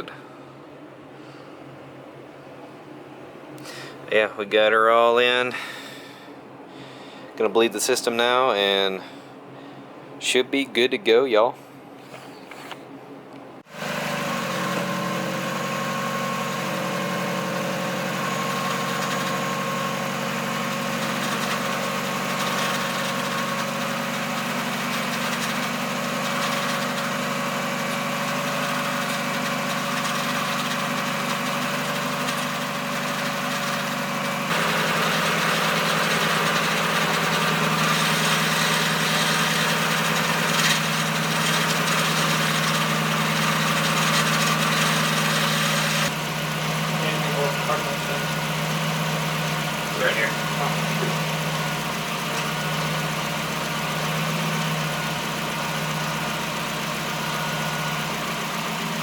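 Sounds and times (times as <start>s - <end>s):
car engine idling: 13.6s - 59.0s.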